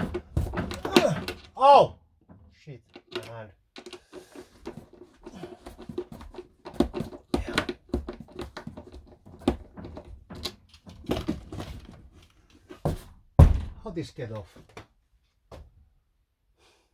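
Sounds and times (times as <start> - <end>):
panelling being pried and banged: 0.0 - 13.9.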